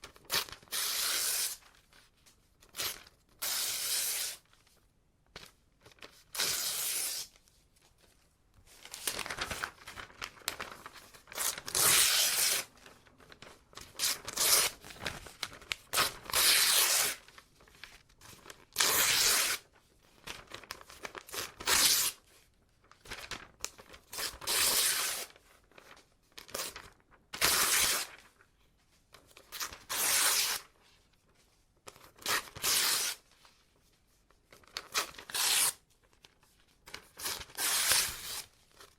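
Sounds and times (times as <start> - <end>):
paper rustling: 7.4 - 24.5
paper ripping: 13.8 - 17.4, 18.8 - 19.6, 29.6 - 30.7, 32.2 - 33.2, 34.8 - 35.8, 37.2 - 38.5.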